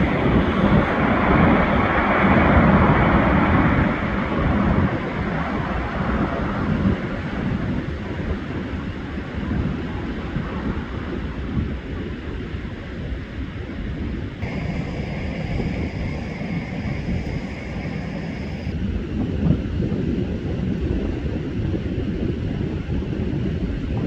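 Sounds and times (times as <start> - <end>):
wind buffeting microphone: 0.0 - 24.0
ocean surf: 14.4 - 18.7
steady high whine: 14.4 - 18.8.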